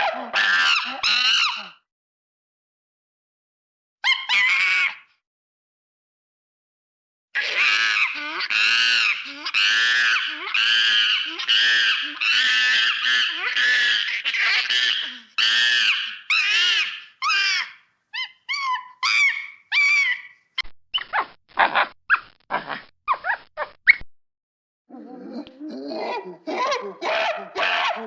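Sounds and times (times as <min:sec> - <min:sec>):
monkeys screaming: 0:00.1 - 0:01.8, 0:04.1 - 0:05.0, 0:07.4 - 0:20.4, 0:26.0 - 0:28.0.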